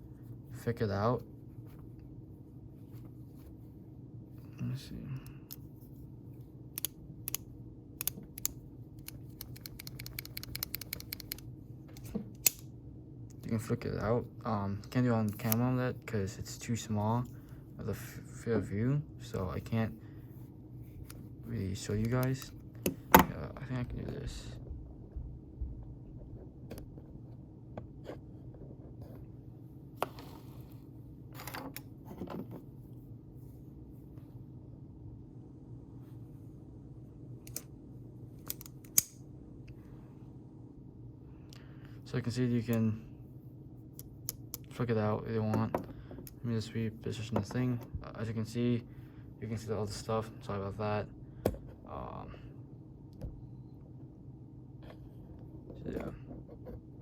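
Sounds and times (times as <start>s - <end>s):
multitool metal clicks: 8.0s - 11.4s, 38.4s - 39.2s.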